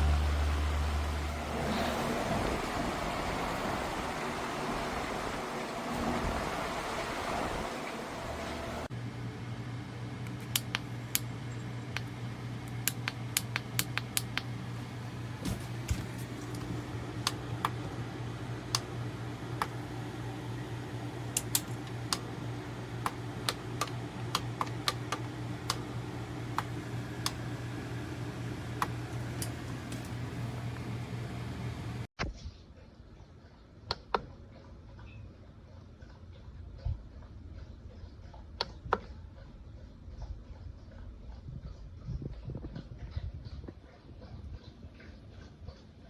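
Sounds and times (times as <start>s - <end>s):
electric fan humming: 0.0s - 32.1s
sharp clicks: 10.3s - 11.3s, 11.9s - 14.5s, 21.3s - 22.3s.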